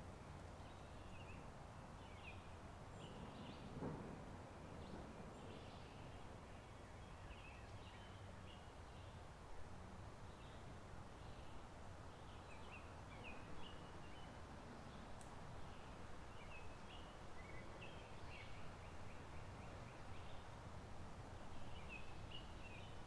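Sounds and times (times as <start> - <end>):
songbirds chirping: 10.2 - 23.0
faint tick: 15.2 - 15.4.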